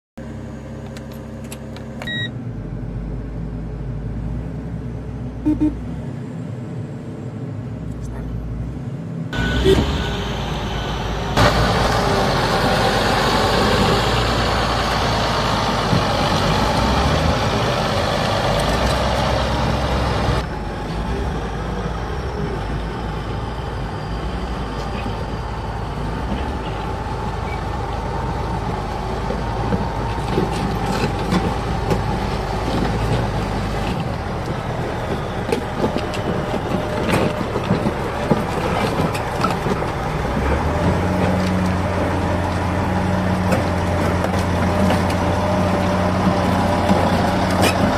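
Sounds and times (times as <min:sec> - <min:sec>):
diesel engine running: 0:00.2 - 0:47.9
loud hiss: 0:09.4 - 0:11.8.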